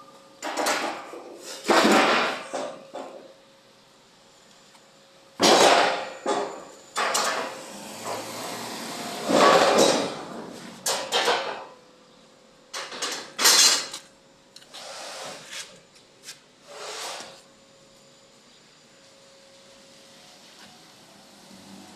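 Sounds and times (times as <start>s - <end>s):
knocks on steel parts: 5.4s - 7.5s.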